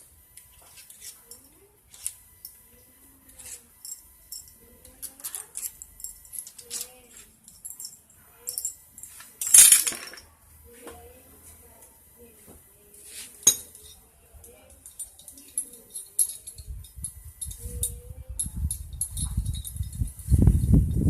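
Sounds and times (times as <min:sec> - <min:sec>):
metal parts clinking on workbench: 0:03.3 - 0:10.3, 0:13.4 - 0:20.0.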